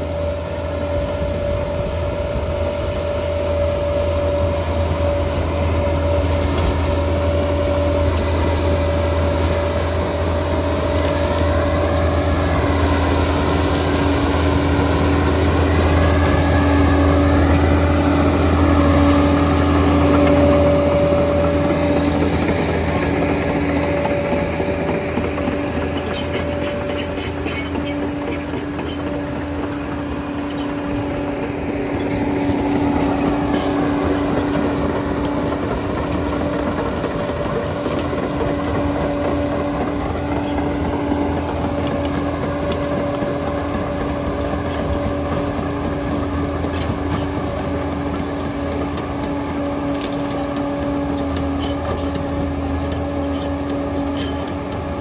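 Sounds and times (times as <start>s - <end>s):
bulldozer diesel engine under load: 0.0s - 55.0s
wavering whine: 0.0s - 55.0s
clanks and knocks: 19.8s - 55.0s.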